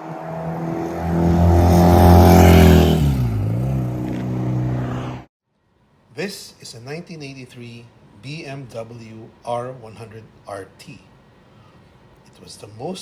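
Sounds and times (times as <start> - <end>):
motorcycle engine running: 0.4 - 5.3.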